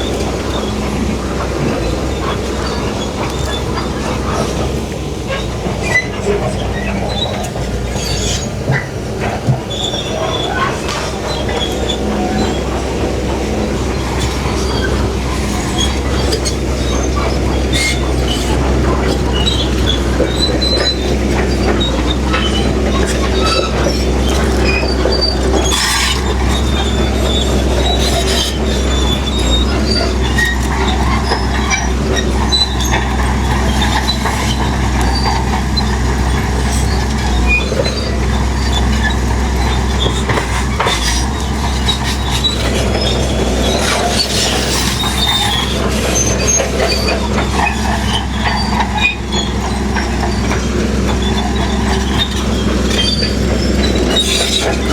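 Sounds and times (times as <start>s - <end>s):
bulldozer diesel engine: 0.0s - 54.9s
steel tracks squealing and clanking: 0.0s - 54.9s.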